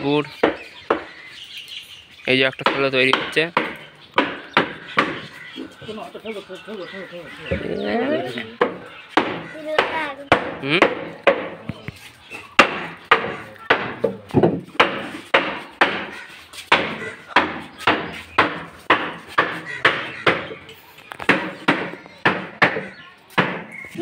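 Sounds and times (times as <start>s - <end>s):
hammer striking wooden cabinet: 8.6s - 11.7s, 12.6s - 20.6s, 21.2s - 23.7s.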